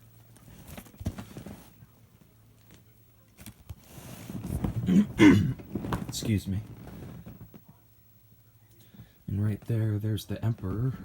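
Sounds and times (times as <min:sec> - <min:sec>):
faint low hum: 0:00.0 - 0:11.0
person coughing: 0:04.8 - 0:05.6.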